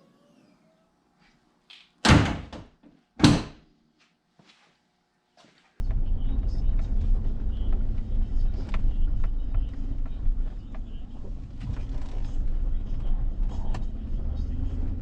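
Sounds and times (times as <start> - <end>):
car cabin road and engine noise: 5.8 - 15.0.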